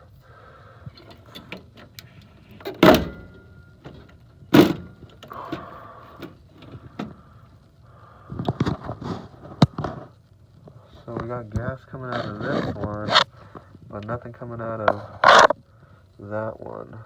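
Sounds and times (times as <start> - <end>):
metal parts clicking and rattling: 0.9 - 7.2
metal scraping clunks: 0.9 - 7.3.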